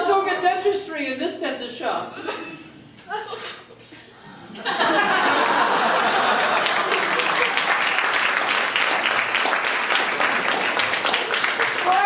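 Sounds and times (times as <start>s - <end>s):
audience applauding: 5.0s - 12.0s.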